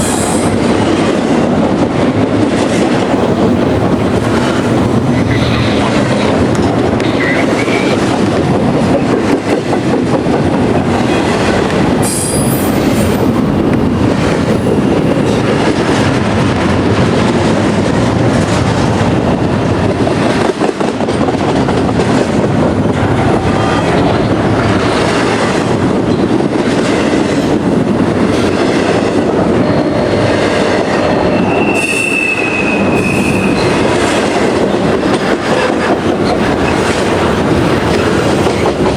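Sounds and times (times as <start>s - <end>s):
freight cars rumbling on rails: 0.0s - 38.9s
high wheel squeal: 30.9s - 33.8s.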